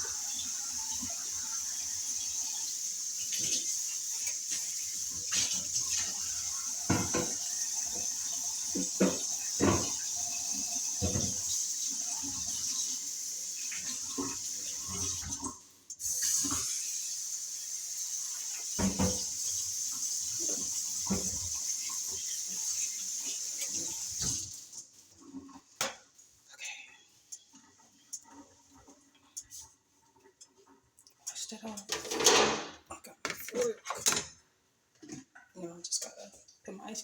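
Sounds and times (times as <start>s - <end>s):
dishes and utensils clinking: 6.8s - 7.5s, 31.8s - 34.4s
tap running into sink: 6.8s - 8.0s, 8.7s - 10.1s, 11.0s - 11.6s, 18.8s - 19.4s, 21.0s - 22.0s.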